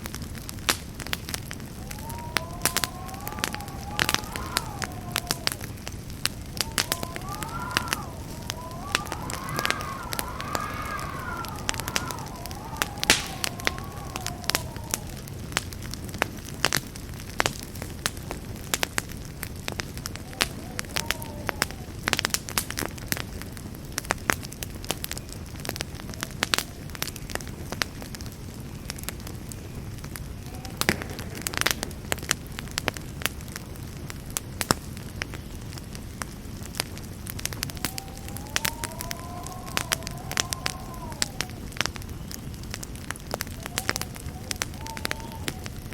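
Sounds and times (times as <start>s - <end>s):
low rush of flame: 0.0s - 24.9s, 35.7s - 45.9s
campfire crackling and popping: 0.0s - 45.9s
wavering whistle: 1.7s - 15.4s, 20.2s - 22.1s, 37.6s - 42.7s, 43.3s - 45.9s.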